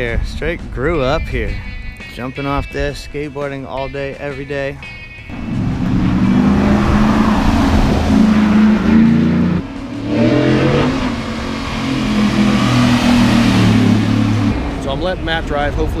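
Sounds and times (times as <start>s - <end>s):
car engine revving under throttle: 5.3s - 14.9s.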